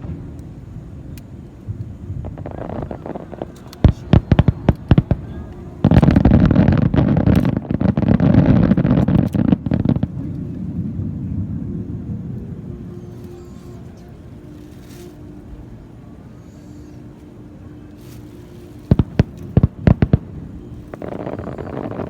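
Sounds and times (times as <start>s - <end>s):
fireworks rumble: 0.0s - 22.0s
fireworks bangs: 1.6s - 10.5s, 18.8s - 22.0s.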